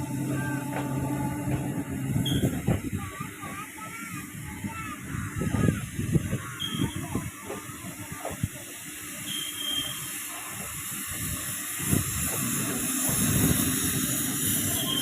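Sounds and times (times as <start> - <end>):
train rumbling: 0.0 - 15.0
faint high squeal: 2.2 - 2.6, 6.6 - 7.1
steady hiss: 4.2 - 15.0.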